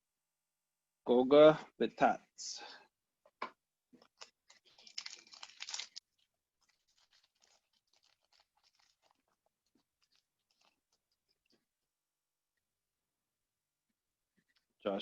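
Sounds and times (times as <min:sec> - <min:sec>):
wrapper and cards crackling: 0:04.0 - 0:11.5
foil wrapper tearing: 0:04.1 - 0:11.0.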